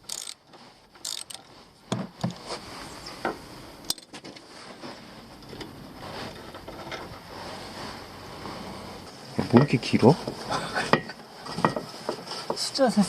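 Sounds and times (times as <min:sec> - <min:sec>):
metal tools clinking: 0:00.0 - 0:01.5.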